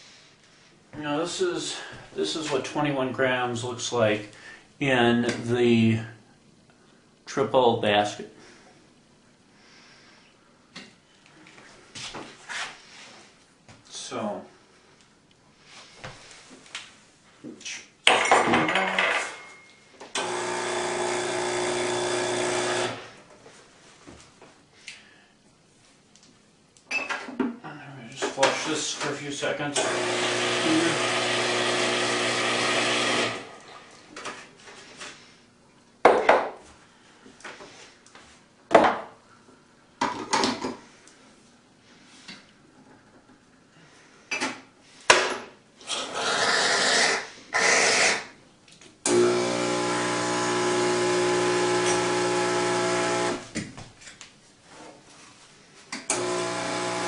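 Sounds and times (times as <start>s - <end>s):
espresso machine pump running: 20.2s - 23.1s, 29.8s - 33.6s, 49.1s - 53.5s, 56.1s - 57.0s.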